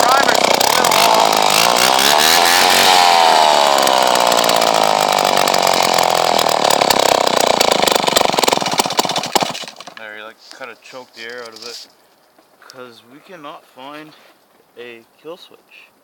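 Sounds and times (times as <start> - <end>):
chainsaw engine revving: 0.0 - 10.0.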